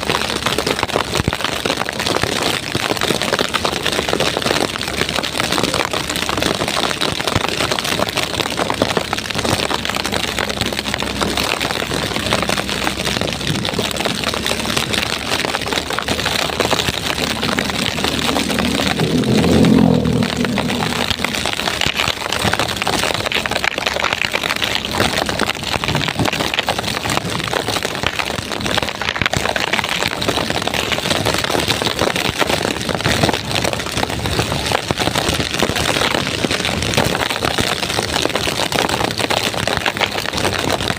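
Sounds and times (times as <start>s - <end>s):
heavy rain pouring: 0.0s - 40.9s
vehicle engine passing: 10.1s - 23.6s.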